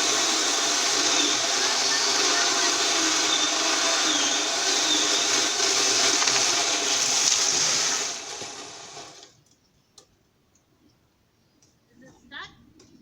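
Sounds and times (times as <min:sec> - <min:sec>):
small engine power tool running: 0:00.0 - 0:09.3.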